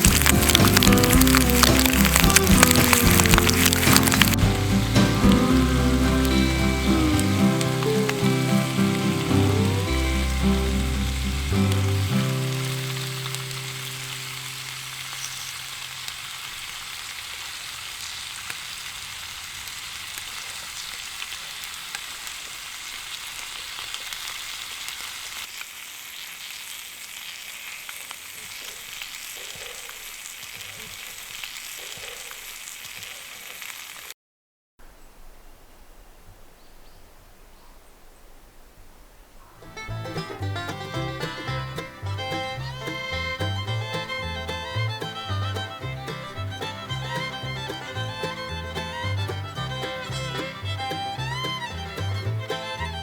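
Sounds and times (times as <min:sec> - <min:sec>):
food sizzling in a frying pan: 0:00.0 - 0:34.2.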